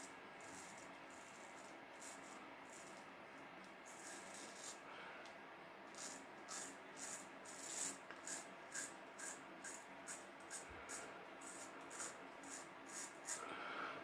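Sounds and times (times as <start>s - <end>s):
razor scraping through stubble: 3.8s - 4.8s, 5.9s - 13.4s.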